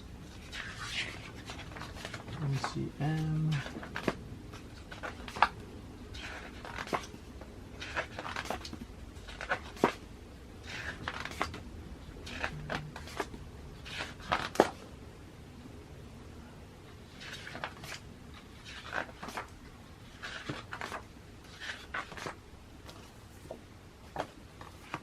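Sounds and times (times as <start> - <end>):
magazine pages turning: 0.3 - 14.8, 17.1 - 25.0.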